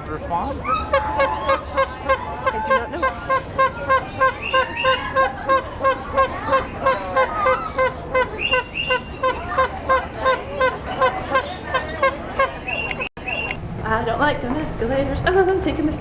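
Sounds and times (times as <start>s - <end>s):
bird honking call: 0.6s - 13.6s
shrill bird squawks and chirps: 3.0s - 13.6s.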